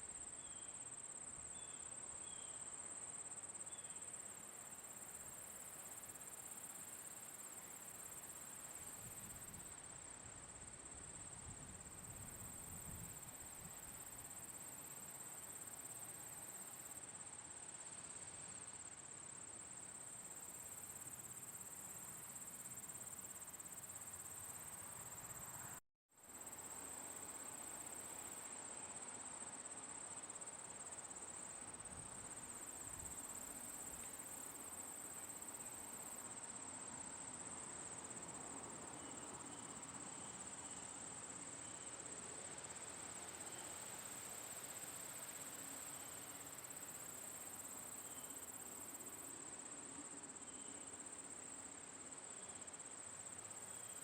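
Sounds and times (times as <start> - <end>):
soft outdoor air hiss: 0.0 - 54.0
crickets trilling: 1.5 - 10.0, 20.0 - 54.0.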